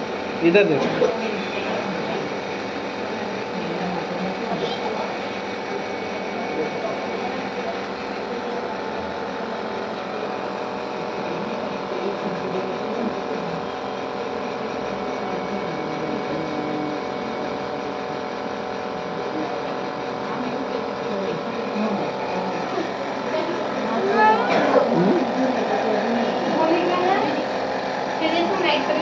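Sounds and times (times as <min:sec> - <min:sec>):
nebulizer compressor humming: 0:00.0 - 0:29.0.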